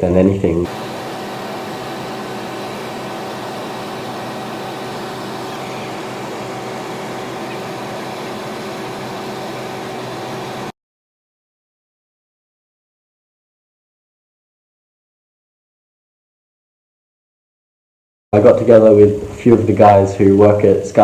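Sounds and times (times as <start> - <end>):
faint hum tones: 0.5 - 10.7
steady hiss: 0.7 - 10.7.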